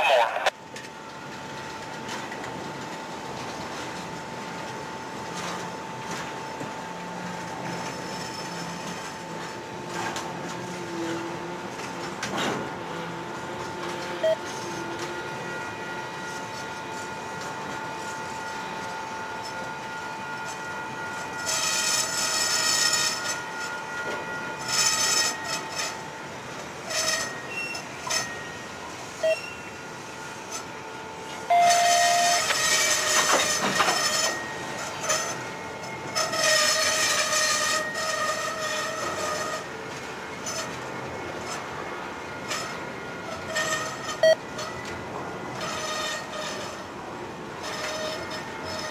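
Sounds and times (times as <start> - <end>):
freight cars rolling rumble: 0.0 - 48.9
shrill wheel squeal: 7.7 - 9.4, 14.2 - 40.8, 42.3 - 44.9, 45.5 - 46.9, 47.6 - 48.9.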